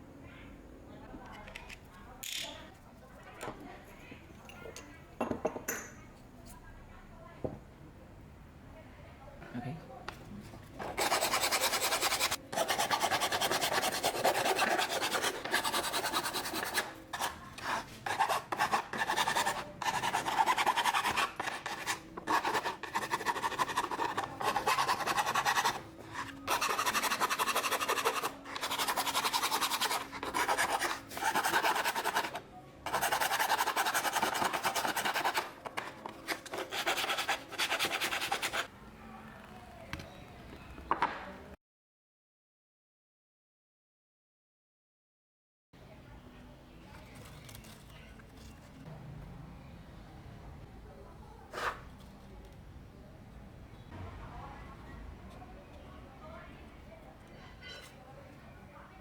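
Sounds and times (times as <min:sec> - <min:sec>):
sanding or filing strokes: 0:11.0 - 0:38.7.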